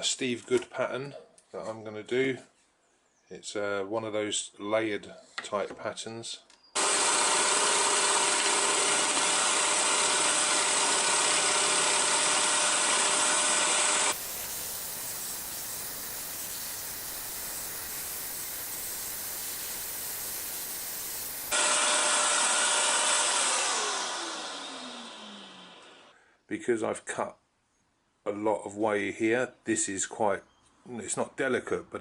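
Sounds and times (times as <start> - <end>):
motor winding down: 6.8 - 14.3, 21.2 - 26.1
scroll saw cutting plywood: 6.8 - 14.4, 21.4 - 26.1.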